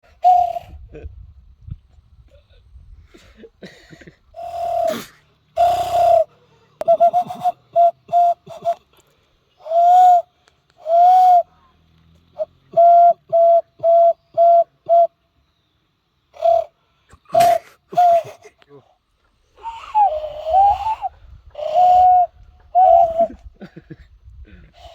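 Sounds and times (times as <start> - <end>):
person whistling bird calls: 0.1 - 0.8, 5.6 - 8.8, 9.6 - 11.5, 12.4 - 15.2, 19.6 - 23.4
breathy blows: 19.4 - 23.4.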